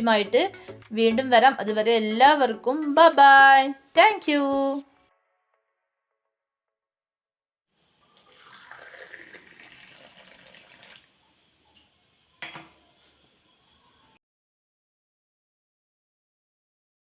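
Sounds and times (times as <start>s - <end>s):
water running and splashing: 8.1s - 11.2s.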